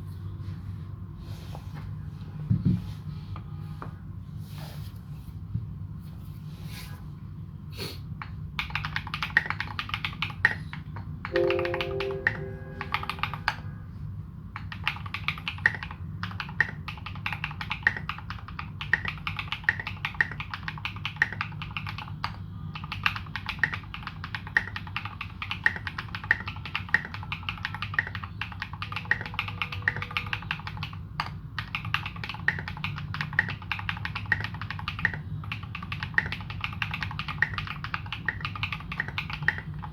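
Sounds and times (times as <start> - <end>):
mechanical keyboard typing: 8.6 - 13.6, 14.6 - 39.9.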